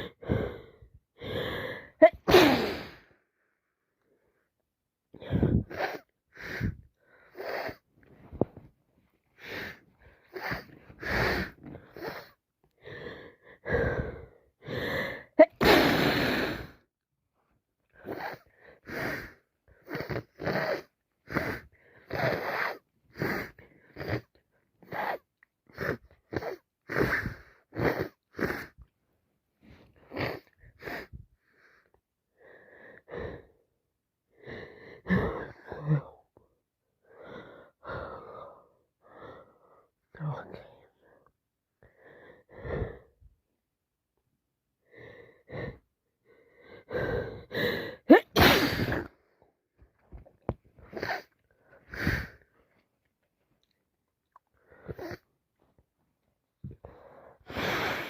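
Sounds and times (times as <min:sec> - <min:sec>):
wheezy gasping breaths: 0:00.0 - 0:03.2, 0:05.2 - 0:16.9, 0:17.9 - 0:28.9, 0:29.6 - 0:33.7, 0:34.3 - 0:36.3, 0:37.0 - 0:43.3, 0:44.8 - 0:52.8, 0:54.4 - 0:55.4, 0:56.7 - 0:58.0
loud sneeze: 0:02.0 - 0:03.0, 0:15.4 - 0:16.4, 0:48.1 - 0:49.1.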